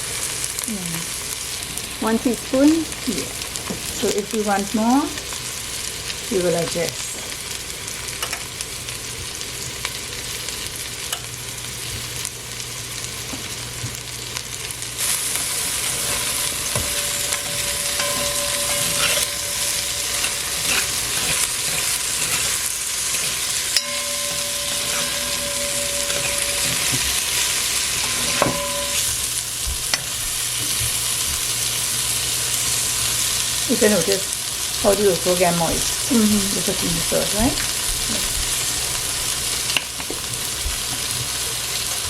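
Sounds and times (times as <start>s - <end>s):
okra sizzling in oil: 0.0s - 42.0s
spoon scraping a pot: 15.0s - 29.1s.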